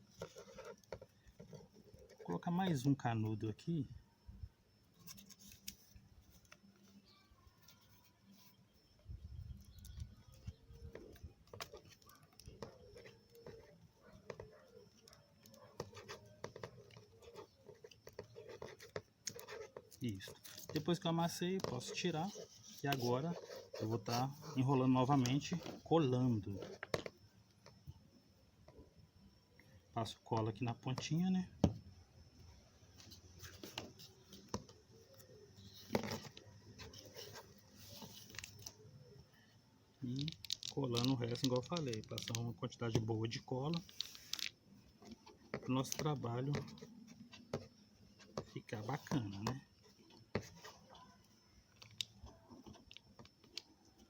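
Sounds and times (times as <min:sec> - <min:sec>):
paper rustling: 0:05.0 - 0:07.0, 0:15.4 - 0:25.9, 0:33.0 - 0:38.8, 0:40.0 - 0:42.5
paper crinkling: 0:05.0 - 0:08.6, 0:33.0 - 0:38.8, 0:40.0 - 0:42.5, 0:43.6 - 0:47.4
small clicks and taps: 0:40.1 - 0:42.4.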